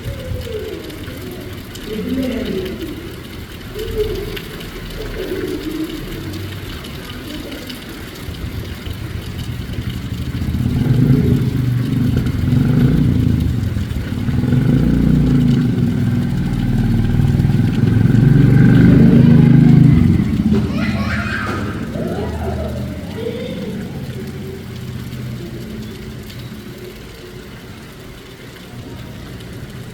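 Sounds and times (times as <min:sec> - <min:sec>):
vehicle engine running: 0:09.0 - 0:29.9.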